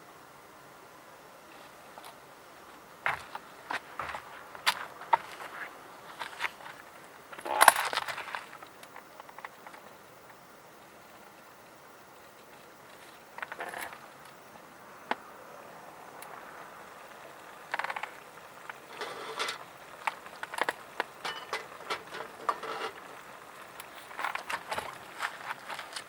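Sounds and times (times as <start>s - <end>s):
metal cooking gear clicking and rattling: 20.4s - 23.1s.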